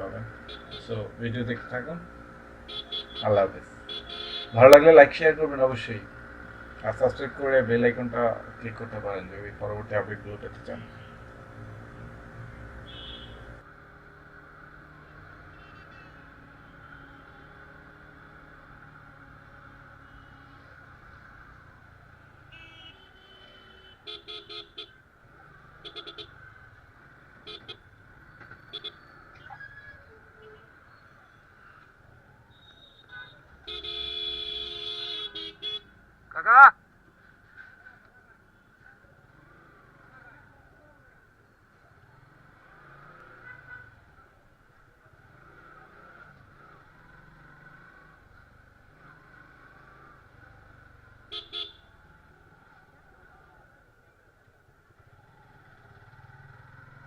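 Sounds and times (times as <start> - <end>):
motorcycle and traffic noise: 0.0 - 57.0
vehicle horn tooting: 0.4 - 0.9, 2.7 - 4.8, 12.8 - 13.5, 15.5 - 16.2, 22.5 - 25.0, 32.7 - 35.9, 51.3 - 51.9.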